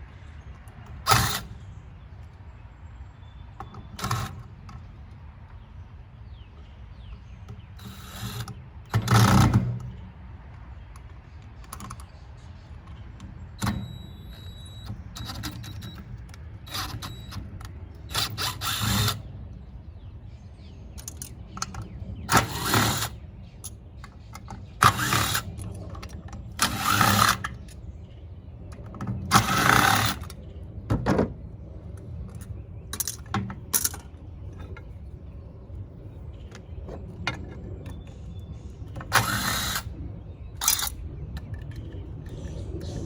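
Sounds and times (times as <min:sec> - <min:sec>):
power drill bursts: 0:07.8 - 0:09.5, 0:16.7 - 0:17.4, 0:18.1 - 0:19.2, 0:22.3 - 0:23.2, 0:24.8 - 0:25.5, 0:26.6 - 0:27.5, 0:29.3 - 0:30.3, 0:39.1 - 0:39.9
clicks and rattles: 0:21.0 - 0:27.8, 0:28.7 - 0:35.1.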